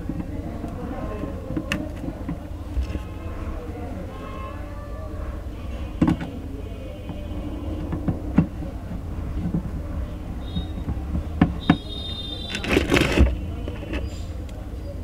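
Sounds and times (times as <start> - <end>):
clicks and knocks of parts handled: 12.4 - 14.6.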